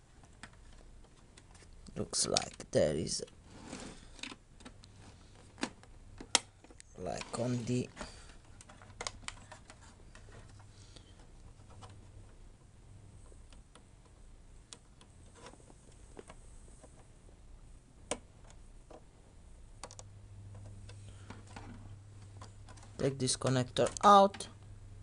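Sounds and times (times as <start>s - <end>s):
low steady hum: 0.0s - 25.0s
plastic parts clicking and tapping: 4.1s - 12.0s.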